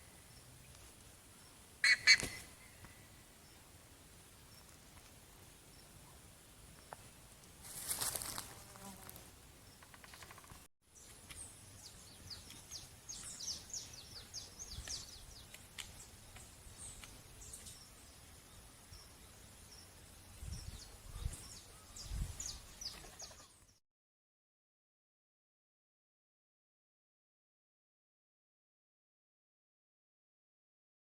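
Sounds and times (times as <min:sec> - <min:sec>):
songbirds chirping: 0:09.4 - 0:23.8.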